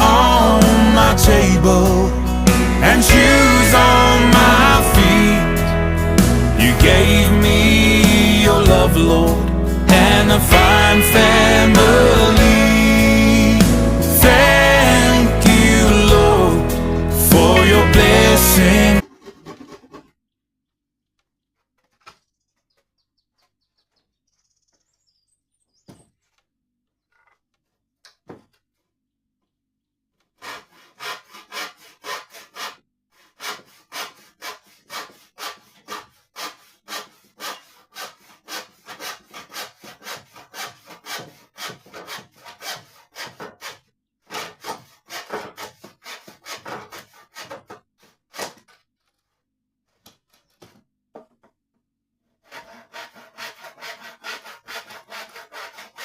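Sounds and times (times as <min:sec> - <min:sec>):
handsaw cutting wood: 0:00.0 - 0:20.0, 0:30.2 - 0:48.7, 0:52.4 - 0:56.0.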